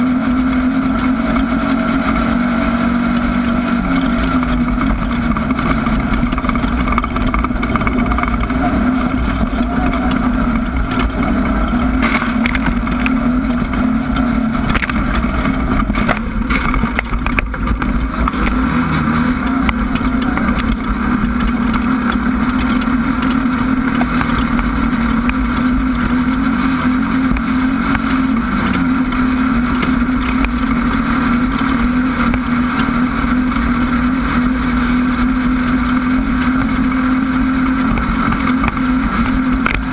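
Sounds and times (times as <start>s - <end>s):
engine running at high revs: 0.0s - 39.9s
sharp knocks and rattles: 3.9s - 25.7s.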